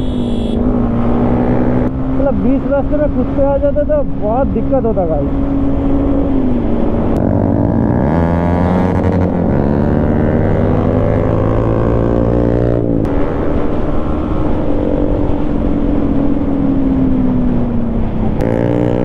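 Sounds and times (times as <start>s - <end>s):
motorcycle engine accelerating: 5.4s - 19.0s.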